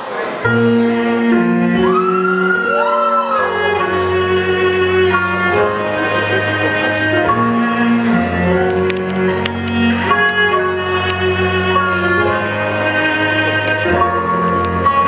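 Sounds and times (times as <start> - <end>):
bowed strings sustained notes: 0.5 - 15.0.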